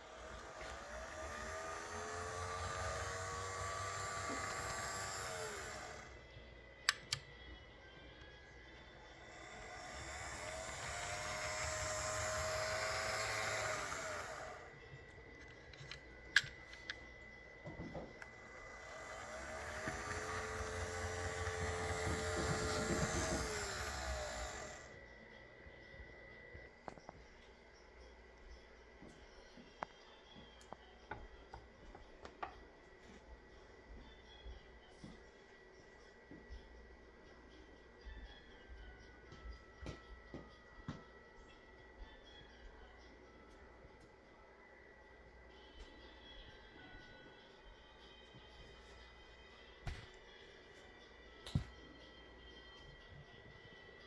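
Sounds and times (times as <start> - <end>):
model train motor whirring: 0.0 - 6.3, 9.0 - 14.8, 18.2 - 25.0
faint motor whine: 0.0 - 54.0
sharp clicks: 6.8 - 7.3.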